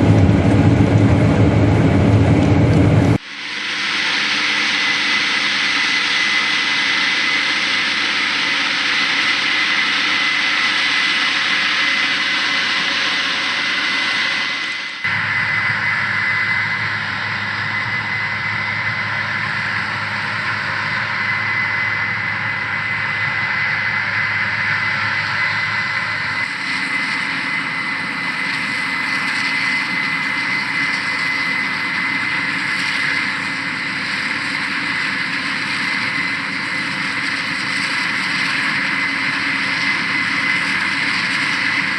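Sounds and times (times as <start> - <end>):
deep machine rumble: 0.0 - 3.2
combine harvester running: 0.0 - 41.9
high constant machine whine: 0.0 - 41.9.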